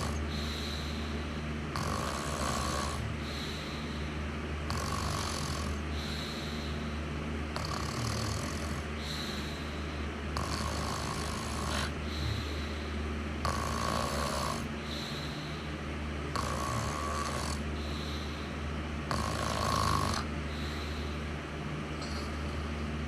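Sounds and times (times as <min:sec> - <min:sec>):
snoring: 0:00.0 - 0:04.0, 0:04.6 - 0:06.8, 0:07.5 - 0:12.8, 0:13.4 - 0:15.4, 0:16.3 - 0:18.4, 0:19.0 - 0:21.2
steady low hum: 0:00.0 - 0:23.0.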